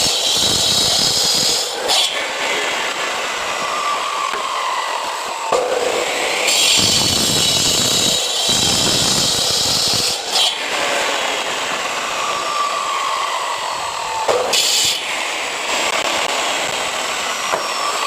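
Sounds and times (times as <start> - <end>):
blade grinding concrete: 0.0 - 18.0
power cutter motor whining: 0.0 - 18.0.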